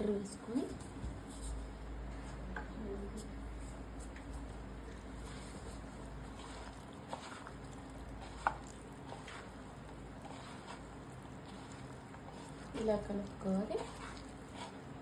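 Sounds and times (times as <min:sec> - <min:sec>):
wet squishing of stirred batter: 0:03.2 - 0:15.0.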